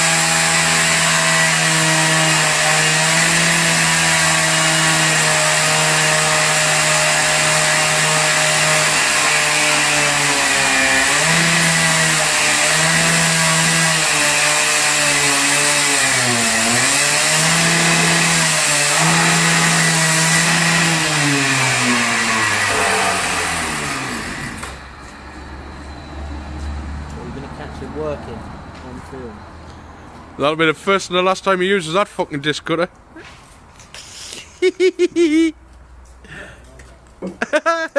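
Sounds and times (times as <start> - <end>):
disc cutter cutting: 17.4 - 24.8.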